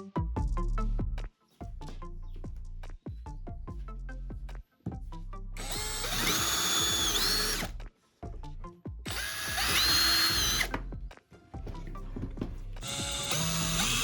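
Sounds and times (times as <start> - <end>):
background music: 0.0 - 14.0
power drill whining: 5.6 - 7.8, 9.1 - 10.8, 12.8 - 14.0.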